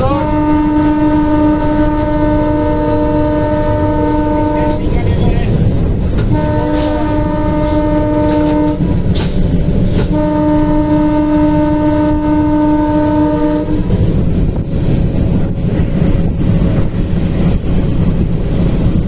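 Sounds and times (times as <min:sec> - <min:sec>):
locomotive horn: 0:00.0 - 0:05.6, 0:06.2 - 0:14.2
low rumble of moving train: 0:00.0 - 0:19.0.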